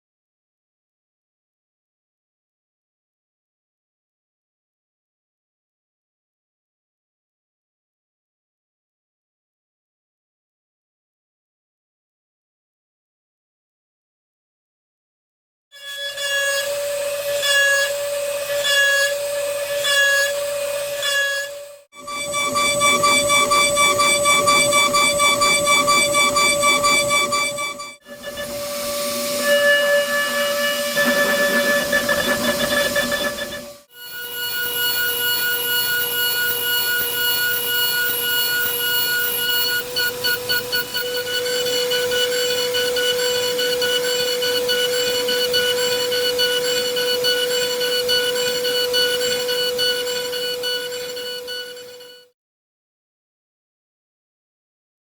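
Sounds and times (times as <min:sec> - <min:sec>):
milling machine spindle whine: 0:16.5 - 0:52.3
milling machine cutting: 0:17.8 - 0:29.4, 0:30.6 - 0:52.2.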